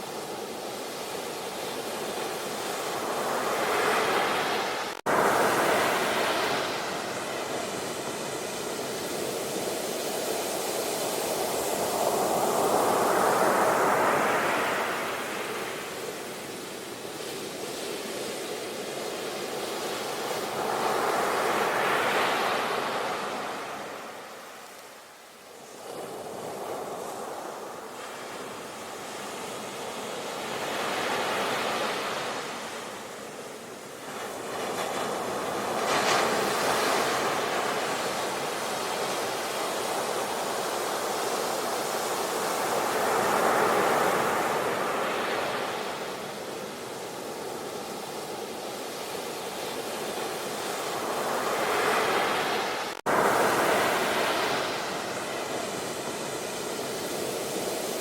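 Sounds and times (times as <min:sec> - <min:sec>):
ocean waves breaking: 0:00.0 - 0:18.2, 0:25.7 - 0:58.0.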